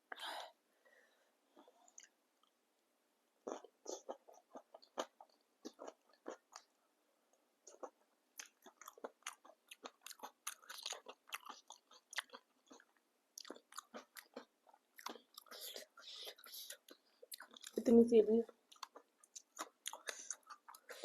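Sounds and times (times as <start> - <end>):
chewing crunchy food: 3.4 - 6.7, 7.6 - 17.8, 18.4 - 21.0.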